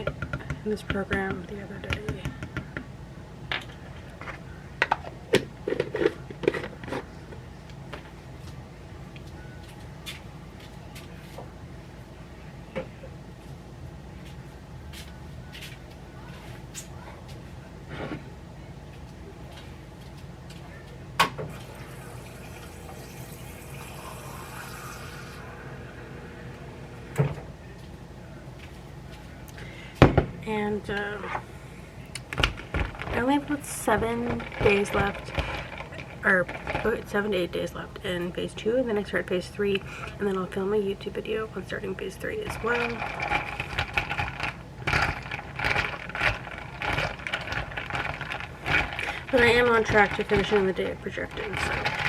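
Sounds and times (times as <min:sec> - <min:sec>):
low background hum: 0:00.0 - 0:52.0
water filling a container: 0:21.6 - 0:25.9, 0:42.5 - 0:52.0
small objects clicking and knocking: 0:32.2 - 0:37.2, 0:42.5 - 0:52.0.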